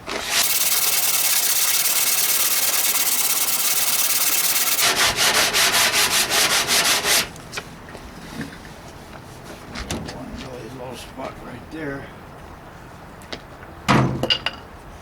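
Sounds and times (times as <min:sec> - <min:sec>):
sandpaper scraping on metal: 0:00.0 - 0:07.3.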